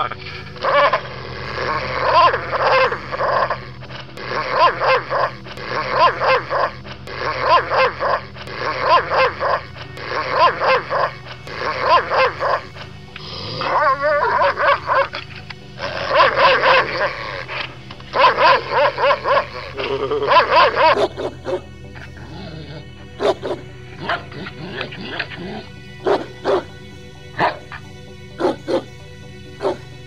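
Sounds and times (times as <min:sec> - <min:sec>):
steady low hum: 0:00.0 - 0:30.0
dog barking: 0:00.6 - 0:03.6, 0:04.2 - 0:12.7, 0:13.6 - 0:15.2, 0:15.8 - 0:21.6, 0:23.2 - 0:26.7, 0:27.4 - 0:27.7, 0:28.4 - 0:28.9, 0:29.6 - 0:29.8.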